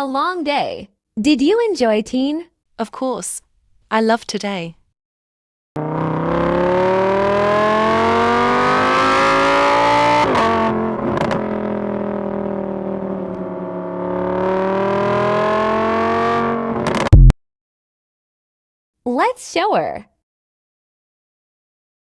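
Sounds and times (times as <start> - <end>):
car engine accelerating: 5.8 - 17.3.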